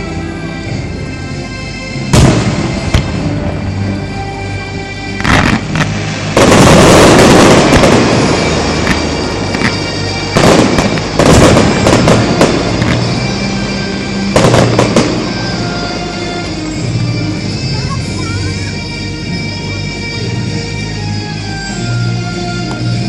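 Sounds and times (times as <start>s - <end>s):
music: 0.0s - 23.0s
fireworks bursting: 2.1s - 3.9s, 5.2s - 16.9s.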